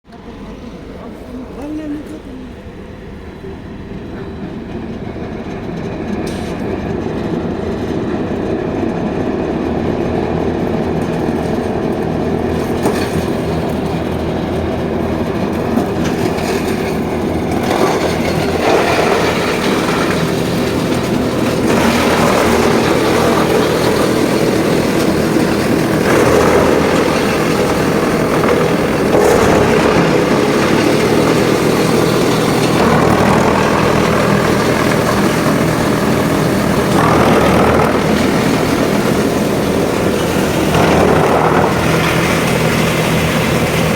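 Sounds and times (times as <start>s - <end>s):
wood chipper grinding: 4.8s - 43.9s.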